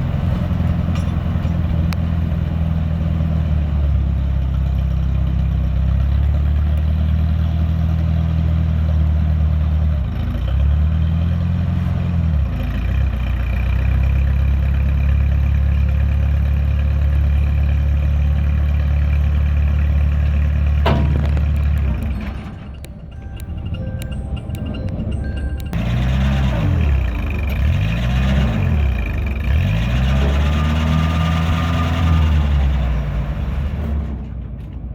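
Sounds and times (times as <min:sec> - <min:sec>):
backhoe engine running: 0:00.0 - 0:34.9.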